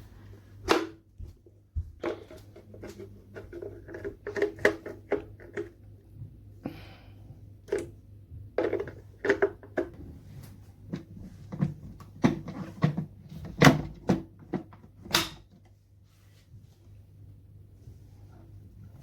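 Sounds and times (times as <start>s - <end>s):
plastic juicer parts clicking: 2.0s - 5.8s.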